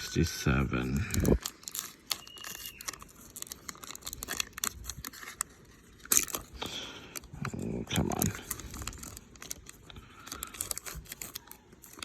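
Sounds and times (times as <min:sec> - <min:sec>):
cards and packaging clicking: 0:00.7 - 0:12.0.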